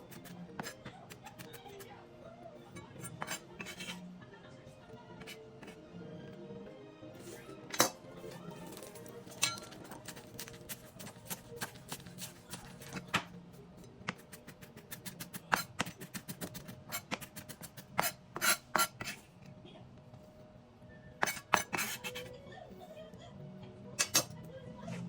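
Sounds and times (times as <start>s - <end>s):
soft background music: 0.0s - 25.0s
knife chopping on cutting board: 3.0s - 4.0s, 8.8s - 13.3s, 14.0s - 19.2s, 21.2s - 22.2s.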